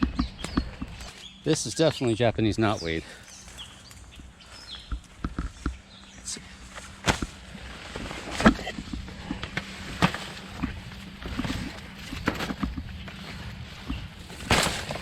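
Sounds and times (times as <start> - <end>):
twigs snapping underfoot: 0.0 - 1.3, 3.2 - 5.8, 6.7 - 15.0
foliage rustling: 0.0 - 15.0.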